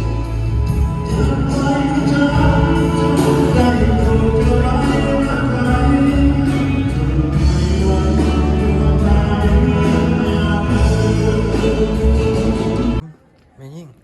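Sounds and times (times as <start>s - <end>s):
person singing: 0.9s - 13.0s.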